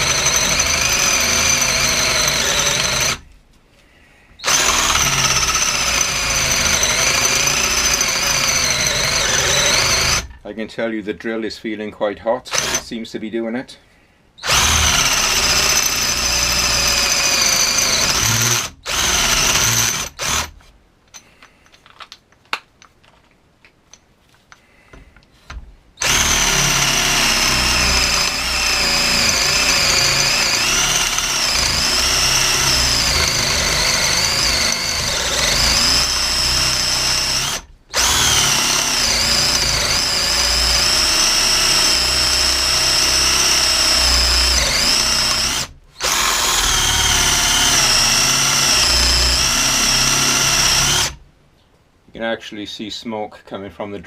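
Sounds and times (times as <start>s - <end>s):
cordless drill whining: 0.0s - 3.3s, 4.4s - 10.4s, 12.5s - 12.8s, 14.4s - 20.6s, 26.0s - 51.2s.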